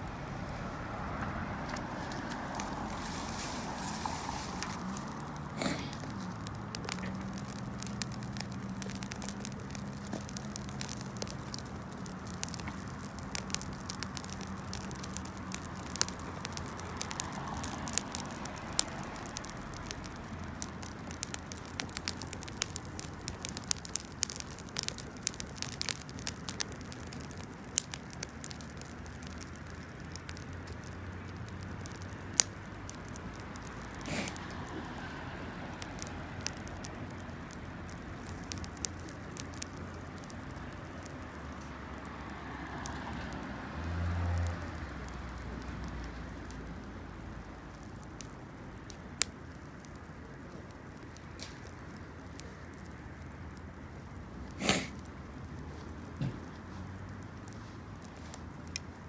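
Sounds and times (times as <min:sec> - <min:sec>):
campfire crackling and popping: 0:00.0 - 0:59.0.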